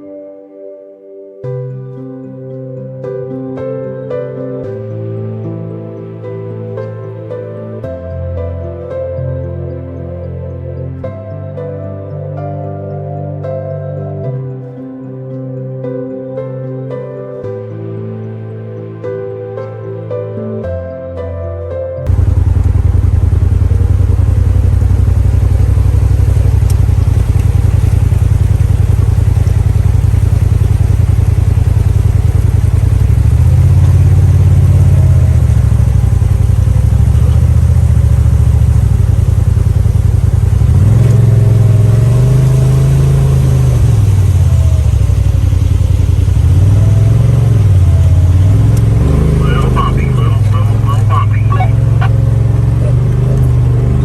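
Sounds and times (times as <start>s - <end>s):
engine revving: 22.1s - 54.0s.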